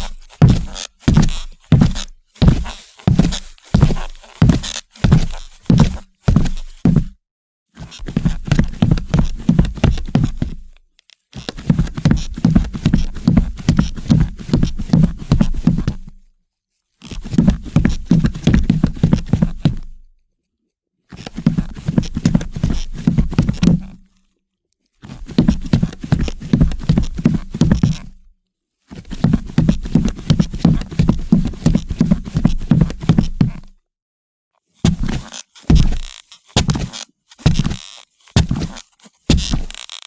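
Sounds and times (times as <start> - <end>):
boots walking on wooden floor: 0.0 - 7.2, 25.4 - 28.1, 29.2 - 33.7, 34.8 - 40.0.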